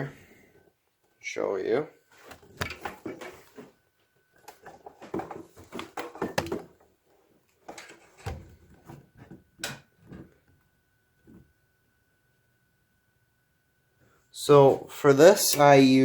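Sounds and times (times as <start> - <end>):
handling knocks and clicks: 2.3 - 3.5, 4.4 - 6.9.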